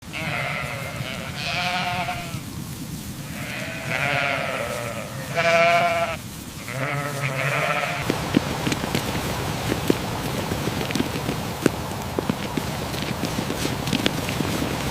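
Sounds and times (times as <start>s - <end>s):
livestock bleating: 0.1s - 2.5s, 3.2s - 8.0s.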